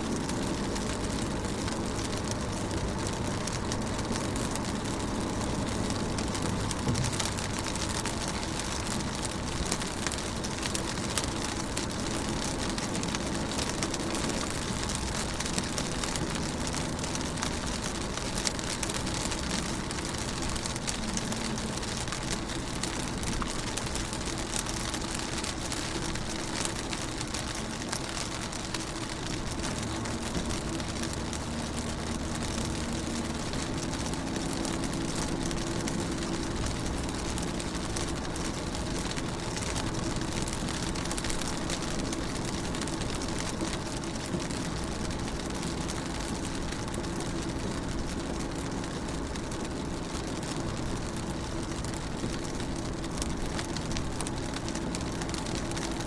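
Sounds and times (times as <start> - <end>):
rain on a car: 0.0 - 56.0.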